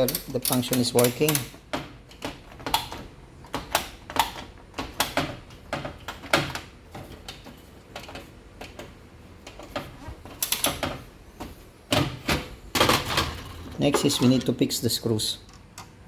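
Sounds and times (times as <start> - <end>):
washing machine switches clicking: 0.0 - 7.4.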